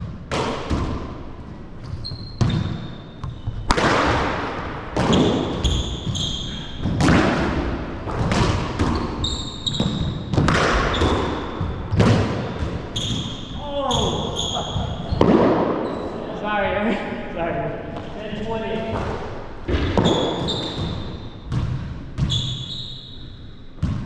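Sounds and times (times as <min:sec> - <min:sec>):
shoe squeaks: 0:01.8 - 0:03.7, 0:05.0 - 0:06.8, 0:08.8 - 0:11.8, 0:12.5 - 0:16.3, 0:19.9 - 0:21.5, 0:22.2 - 0:23.6
rubber ball cracking off paddles: 0:03.6 - 0:05.6, 0:09.8 - 0:12.8.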